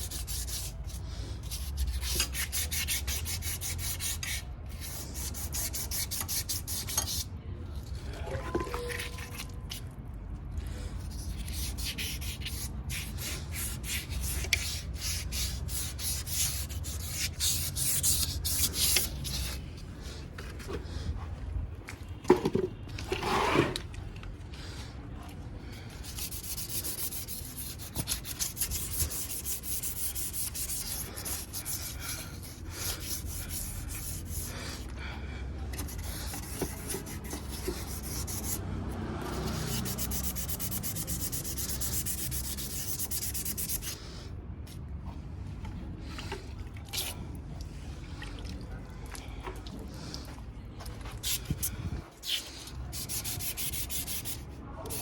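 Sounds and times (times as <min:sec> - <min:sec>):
hand sanding strokes: 0:00.0 - 0:07.3, 0:11.0 - 0:19.7, 0:26.0 - 0:34.9, 0:35.8 - 0:44.1, 0:51.1 - 0:55.0.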